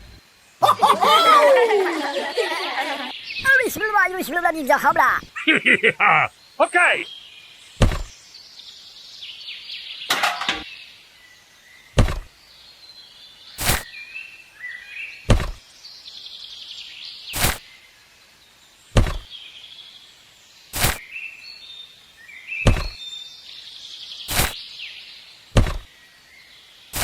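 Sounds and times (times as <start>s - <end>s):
birds chirping: 0.0s - 27.0s
sharp knocks: 7.8s - 8.1s, 12.0s - 12.3s, 15.3s - 15.6s, 19.0s - 19.3s, 22.7s - 23.0s, 25.6s - 25.9s.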